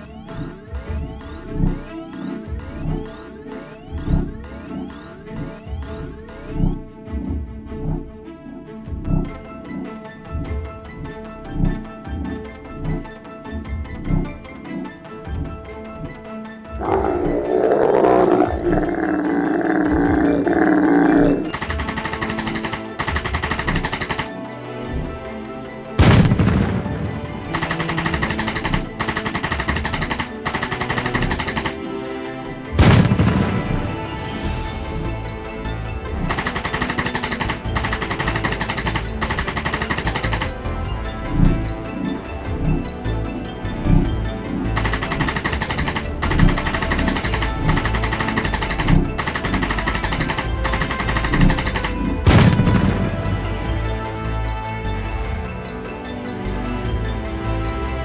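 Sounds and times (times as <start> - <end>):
rapid automatic gunfire: 21.5 - 24.5, 26.0 - 32.1, 32.8 - 33.7, 36.3 - 40.8, 44.8 - 53.2.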